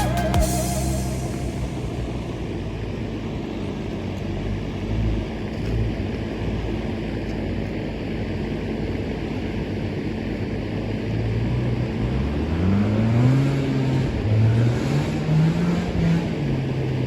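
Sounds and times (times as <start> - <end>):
rotary engine revving: 11.4 - 17.0.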